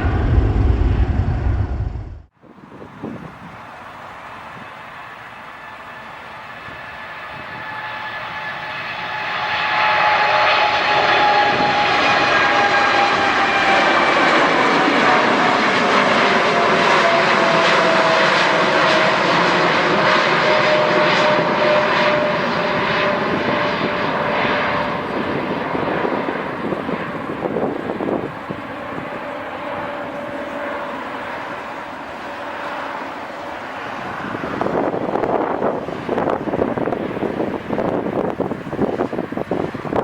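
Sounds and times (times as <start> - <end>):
jet airliner engines roaring: 0.0 - 40.0.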